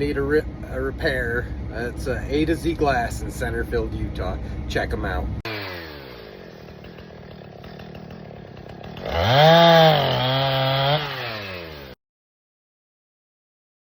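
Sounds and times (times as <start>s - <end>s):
engine revving: 5.4s - 12.0s.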